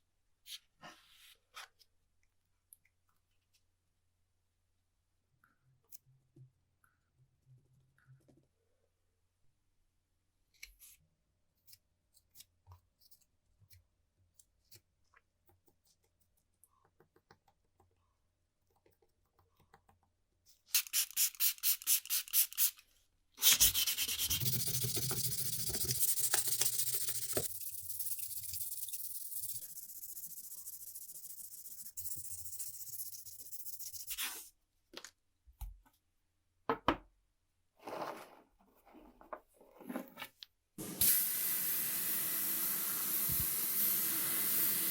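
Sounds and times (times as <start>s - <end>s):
sanding strokes: 23.4s - 34.4s.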